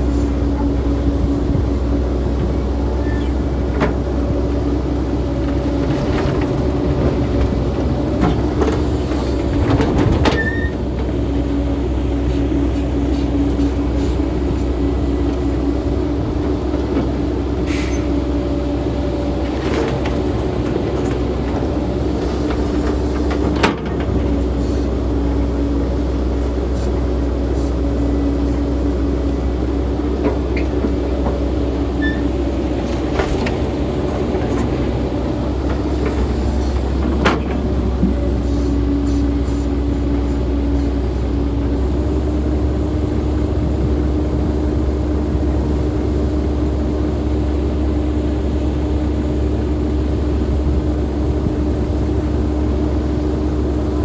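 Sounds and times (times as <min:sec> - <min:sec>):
excavator diesel engine droning: 0:00.0 - 0:54.0.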